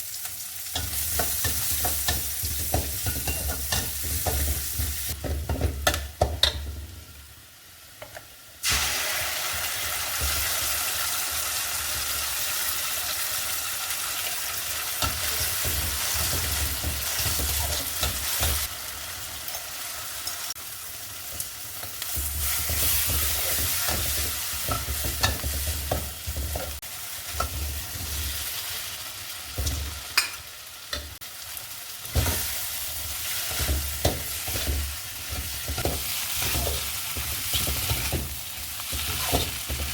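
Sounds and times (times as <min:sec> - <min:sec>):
food sizzling in a pan: 0:00.0 - 0:39.9
utensil scraping a pan: 0:33.2 - 0:39.9.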